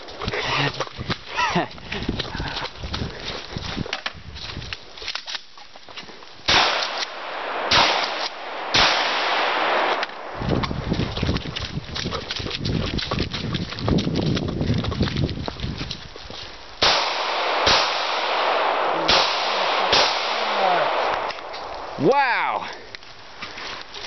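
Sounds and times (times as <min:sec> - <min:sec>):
rifle shots: 0:06.5 - 0:10.4, 0:16.8 - 0:21.9.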